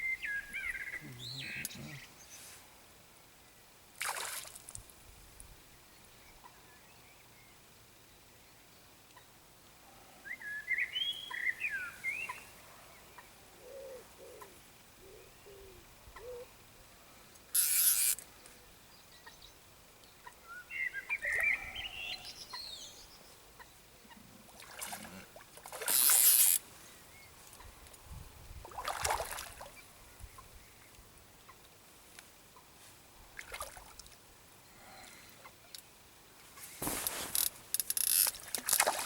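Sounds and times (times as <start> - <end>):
water splashing: 4.0 - 4.8, 24.5 - 26.4, 28.7 - 29.7, 37.3 - 39.0.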